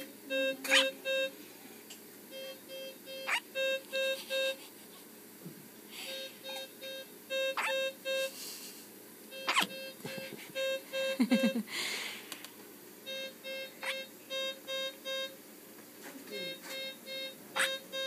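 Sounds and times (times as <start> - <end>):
person hiccuping: 0.6 - 1.0, 6.4 - 6.8, 9.4 - 10.2
electronic beeps: 9.4 - 11.5.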